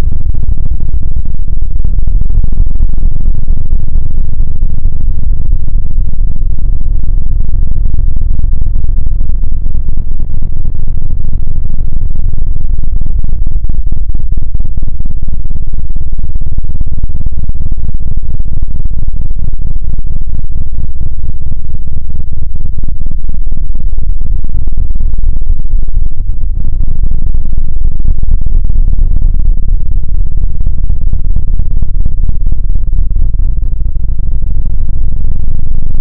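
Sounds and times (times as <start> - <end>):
deep rumble: 0.0 - 36.0.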